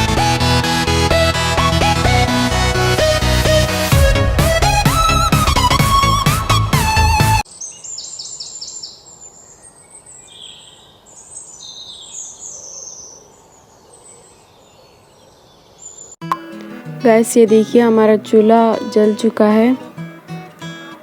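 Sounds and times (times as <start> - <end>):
electronic background music: 0.0 - 7.4
birds chirping: 7.4 - 16.2
faint outdoor noise: 7.4 - 21.0.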